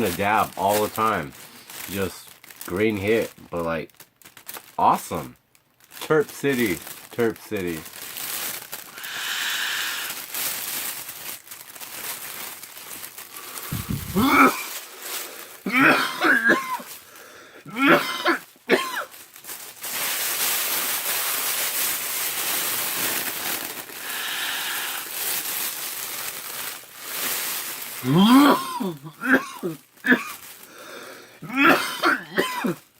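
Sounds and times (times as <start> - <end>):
breathy hissing inhale: 9.0 - 10.2, 17.0 - 17.7, 24.0 - 25.1, 30.7 - 31.4
man coughing wheezily: 13.7 - 14.7, 15.7 - 16.9, 17.7 - 19.1, 28.0 - 30.4, 31.4 - 32.8.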